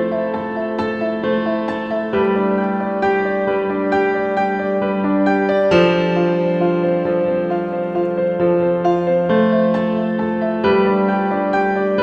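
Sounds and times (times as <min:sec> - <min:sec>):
gentle slow piano music: 0:00.0 - 0:12.0.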